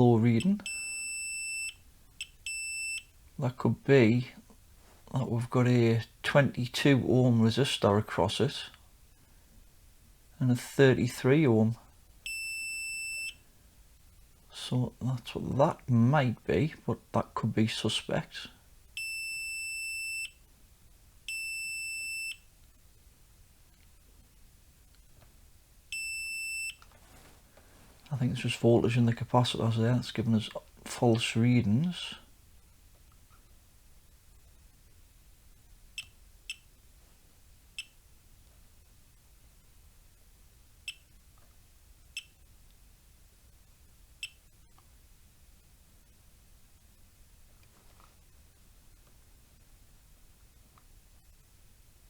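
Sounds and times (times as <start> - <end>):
multimeter continuity beeps: 0.4 - 3.2, 12.2 - 13.4, 19.0 - 20.4, 21.3 - 22.5, 25.9 - 26.9.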